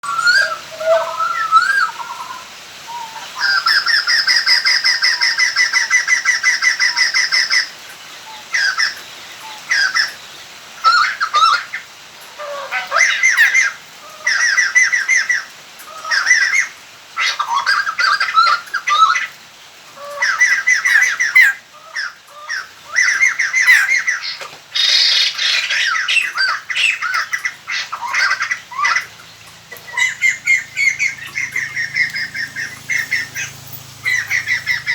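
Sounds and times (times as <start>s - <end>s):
bird cackling chatter: 20.0s - 34.9s.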